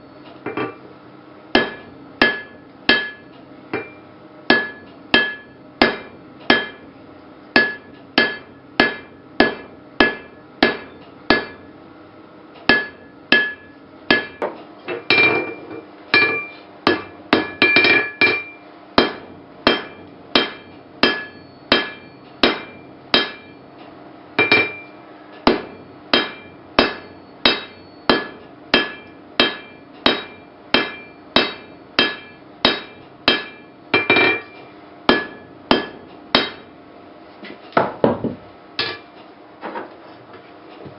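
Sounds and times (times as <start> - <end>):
hammer striking steel on anvil: 1.5 - 6.9, 7.6 - 11.7, 12.7 - 23.6, 24.4 - 36.7, 38.8 - 39.1.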